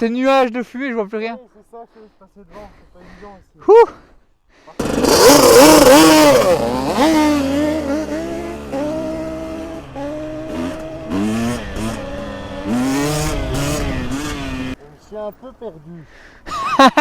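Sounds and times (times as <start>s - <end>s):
two-stroke engine revving: 4.8s - 14.8s.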